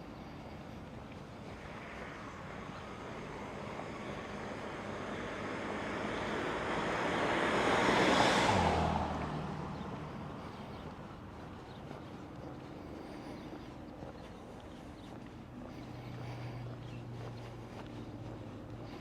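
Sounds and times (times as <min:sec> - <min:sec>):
car passing by: 0:00.8 - 0:13.5.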